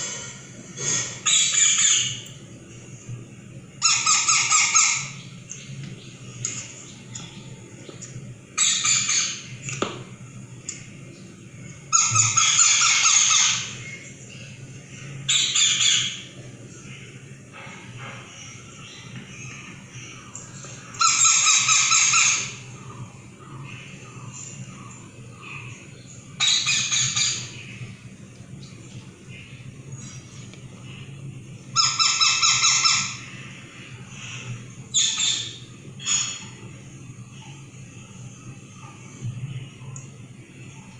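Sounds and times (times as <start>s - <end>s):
parakeet squawking: 0.8s - 2.2s, 3.8s - 5.2s, 8.6s - 9.5s, 11.9s - 13.8s, 15.3s - 16.2s, 21.0s - 22.6s, 26.4s - 27.6s, 31.8s - 33.3s, 34.9s - 36.4s.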